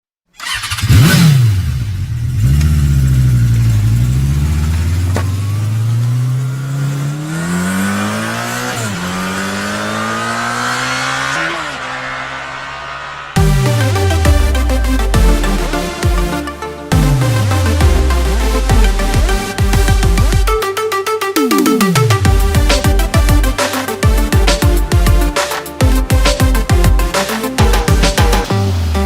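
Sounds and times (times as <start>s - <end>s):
engine revving and accelerating: 0.4s - 16.3s
electronic music: 9.8s - 29.0s.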